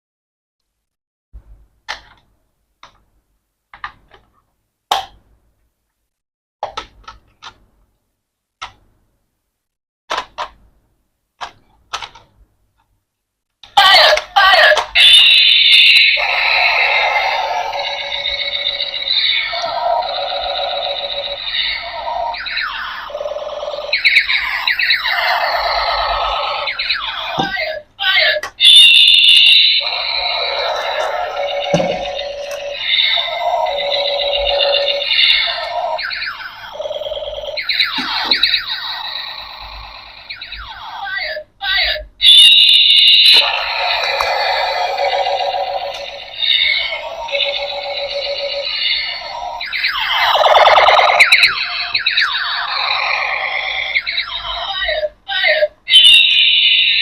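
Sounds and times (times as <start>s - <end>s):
toy warbling electronic tones: 14.6s - 27.8s, 28.6s - 40.8s, 42.2s - 55.0s, 55.9s - 57.0s.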